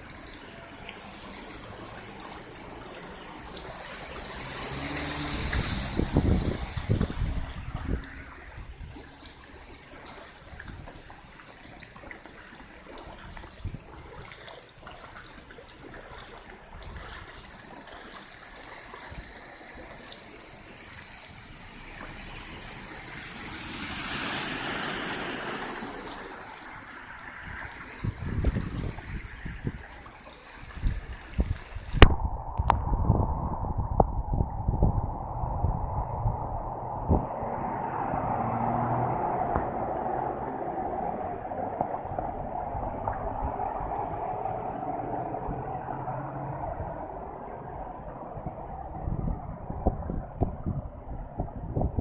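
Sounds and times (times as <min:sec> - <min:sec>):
heavy rain: 0:00.0 - 0:32.7, 0:33.6 - 0:50.3
rainwater running and trickling: 0:00.0 - 0:52.0
wind buffeting microphone: 0:03.1 - 0:11.2, 0:13.0 - 0:14.4, 0:15.8 - 0:17.8, 0:27.3 - 0:52.0.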